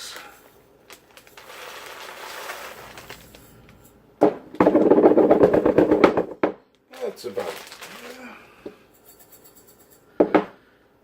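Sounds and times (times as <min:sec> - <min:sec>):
dry rice grains rattling: 0:00.0 - 0:03.9, 0:06.9 - 0:08.3.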